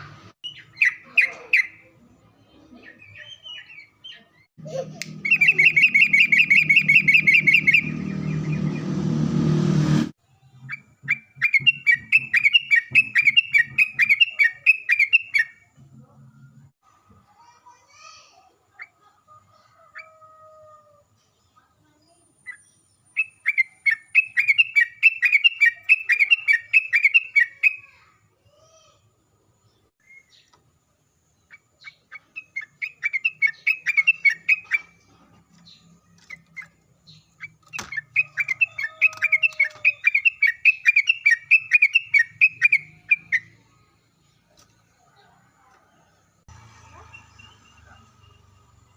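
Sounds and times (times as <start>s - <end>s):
bird chattering song: 0.4s - 8.8s, 10.5s - 15.7s, 21.5s - 28.0s, 31.4s - 43.7s.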